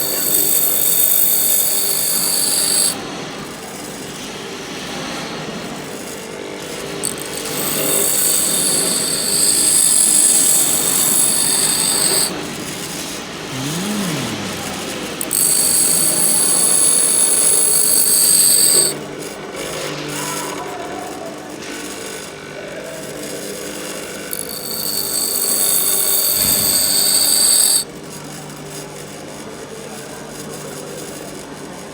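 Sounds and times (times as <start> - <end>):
high-pitched grinding of drill bit: 0.0 - 4.2, 5.8 - 19.1, 23.0 - 27.9
grinder running: 0.0 - 29.3.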